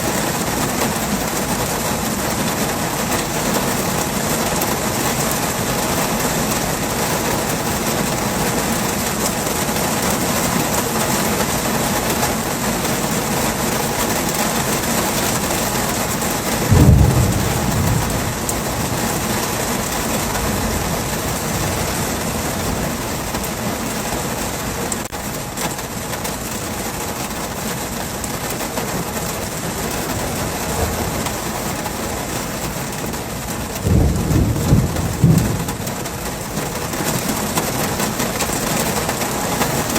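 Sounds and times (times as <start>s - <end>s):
heavy rain pouring: 0.0s - 39.9s
thunder: 16.3s - 23.8s, 30.1s - 32.3s, 33.8s - 38.0s.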